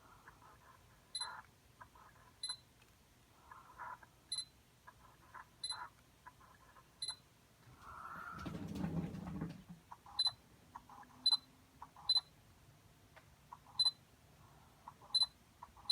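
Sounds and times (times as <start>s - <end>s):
camera focus beep: 12.1s - 12.3s.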